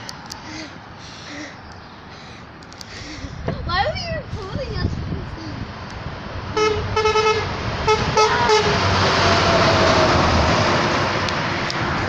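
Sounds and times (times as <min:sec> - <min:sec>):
truck passing by: 0:00.0 - 0:12.0
truck horn blasts: 0:06.5 - 0:09.0.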